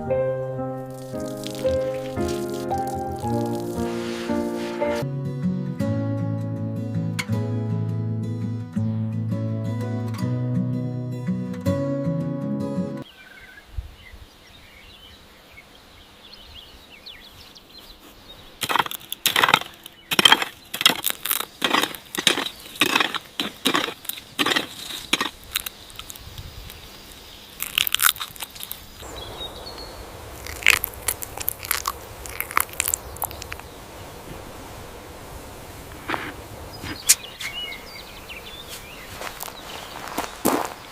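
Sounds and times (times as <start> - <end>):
guitar music: 0.0 - 13.0
crunching sounds: 0.9 - 5.0, 18.0 - 34.4, 35.8 - 37.6, 38.6 - 40.9.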